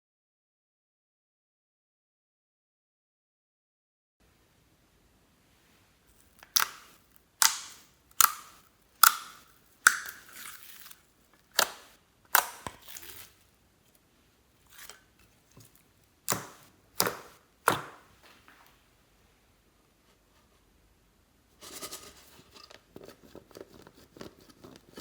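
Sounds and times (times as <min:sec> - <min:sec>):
slime popping wetly: 0:06.4 - 0:10.7, 0:12.4 - 0:13.3.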